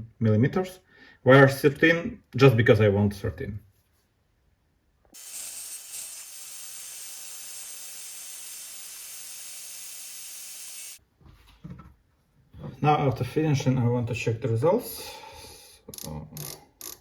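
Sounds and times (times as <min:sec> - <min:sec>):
high hiss of air jetting: 0:05.2 - 0:11.0.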